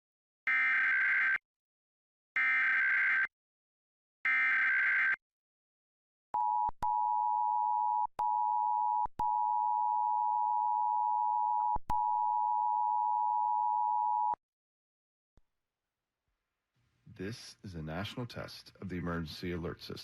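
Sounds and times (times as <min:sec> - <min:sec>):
two-tone alarm tone: 0:00.5 - 0:01.4, 0:02.4 - 0:03.3, 0:04.3 - 0:05.2.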